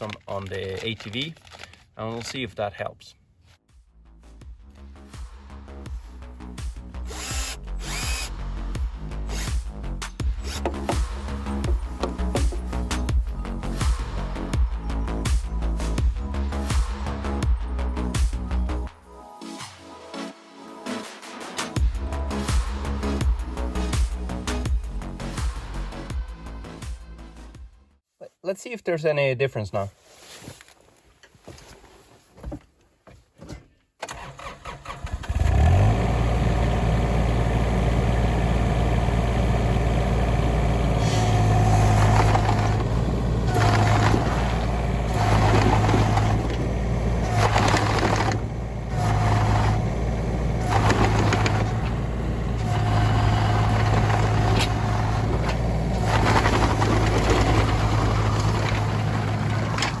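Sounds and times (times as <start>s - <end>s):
diesel engine starting and running: 4.8s - 18.9s, 21.8s - 27.5s, 34.0s - 60.0s
engine straining under hydraulic load: 9.3s - 13.2s, 34.1s - 60.0s.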